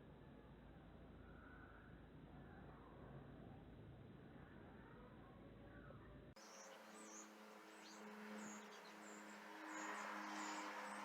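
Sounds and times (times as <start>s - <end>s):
passing traffic rush: 6.8s - 11.0s.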